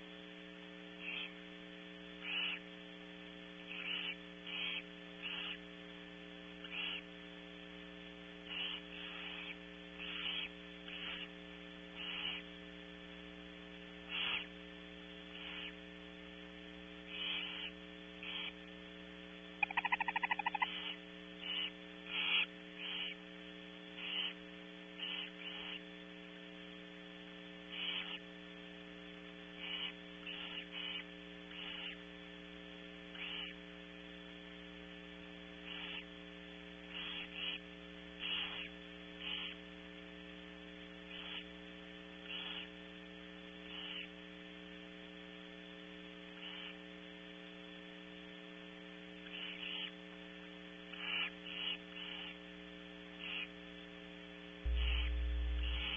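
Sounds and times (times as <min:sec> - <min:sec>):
owl nestlings hissing: 0:12.0 - 0:12.4, 0:14.1 - 0:14.5, 0:17.1 - 0:18.6, 0:29.6 - 0:32.0, 0:35.6 - 0:36.0, 0:46.4 - 0:46.8, 0:49.3 - 0:49.9
electrical hum: 0:54.7 - 0:55.9.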